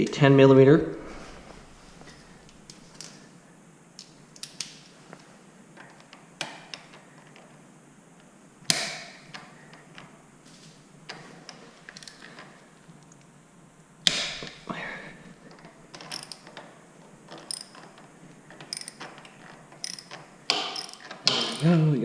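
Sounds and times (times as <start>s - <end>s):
ratchet clicking on bolt: 17.4s - 17.9s, 18.6s - 19.1s, 19.8s - 21.6s.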